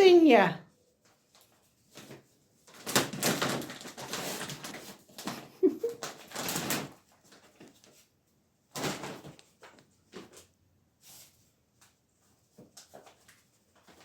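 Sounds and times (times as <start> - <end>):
puppy scuffling and rummaging: 1.1 - 8.1, 12.2 - 14.0.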